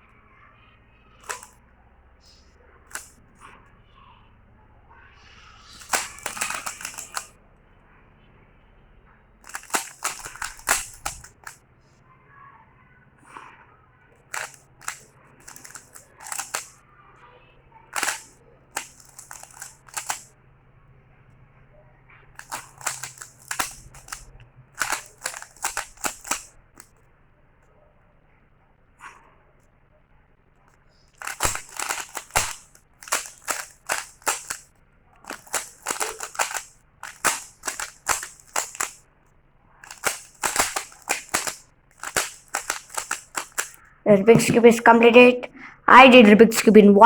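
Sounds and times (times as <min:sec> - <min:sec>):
puzzle cube plastic clicks: 0:01.2 - 0:01.6, 0:02.9 - 0:03.1, 0:05.2 - 0:07.3, 0:09.4 - 0:11.6, 0:14.3 - 0:16.8, 0:17.9 - 0:20.3, 0:22.4 - 0:26.9, 0:31.2 - 0:39.0, 0:39.8 - 0:46.9.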